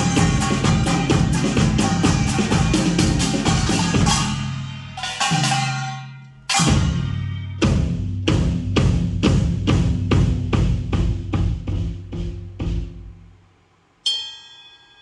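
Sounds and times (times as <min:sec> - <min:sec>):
cymbal wash: 0:00.0 - 0:08.0, 0:14.0 - 0:15.0
drum kit hits: 0:00.0 - 0:13.4
ringing metallic strike: 0:02.1 - 0:07.7, 0:14.0 - 0:15.0.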